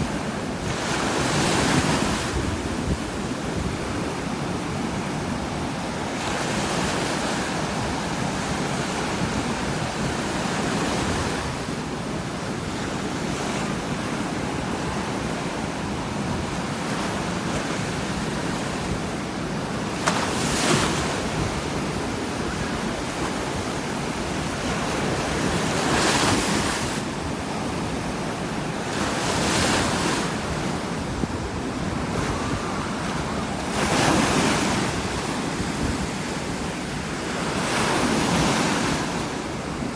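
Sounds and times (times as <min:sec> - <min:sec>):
ocean waves crashing on shore: 0:00.0 - 0:39.9.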